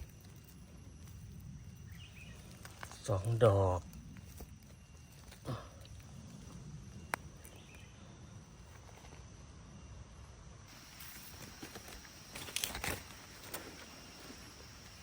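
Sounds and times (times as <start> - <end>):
dry leaves rustling and crunching: 10.7 - 15.0.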